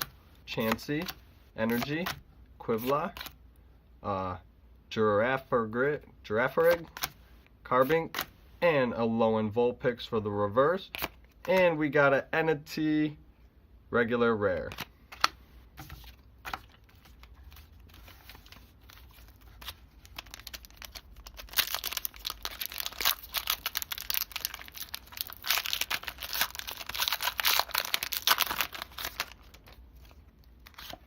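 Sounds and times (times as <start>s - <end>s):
foil packet crinkling: 16.5s - 31.0s.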